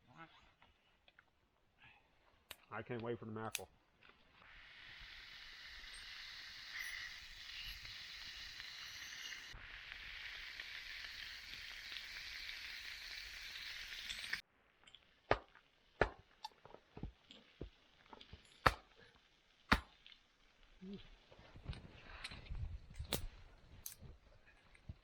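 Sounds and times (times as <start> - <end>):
fish sizzling in a pan: 4.4 - 14.4.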